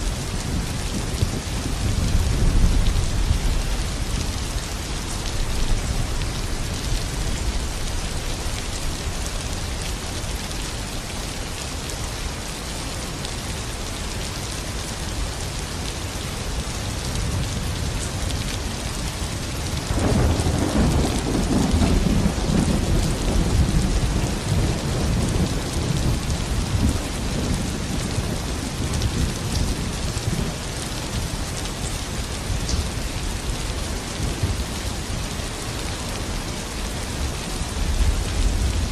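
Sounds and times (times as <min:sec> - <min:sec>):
low rumble of thunder: 0:00.0 - 0:09.2, 0:16.8 - 0:36.2, 0:37.3 - 0:38.9
steady rain falling: 0:00.0 - 0:38.9.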